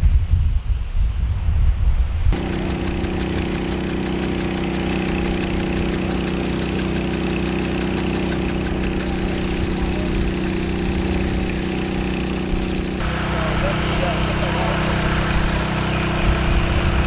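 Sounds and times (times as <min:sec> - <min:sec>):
fast high-pitched ticking: 0:02.4 - 0:13.0
vehicle engine idling: 0:02.4 - 0:17.0.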